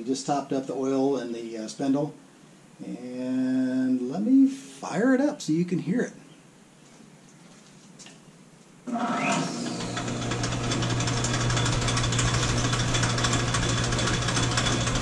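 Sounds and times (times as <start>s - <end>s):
lathe motor whining and humming: 8.9s - 15.0s.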